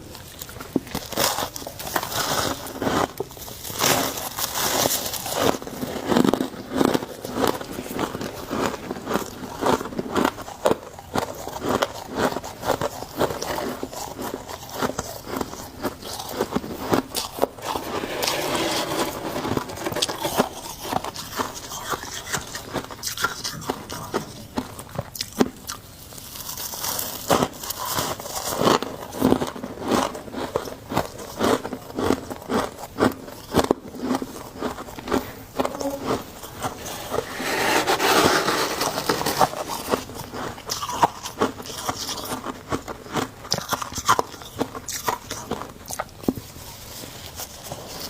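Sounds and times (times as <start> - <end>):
chewing crunchy ice: 0.0 - 48.0.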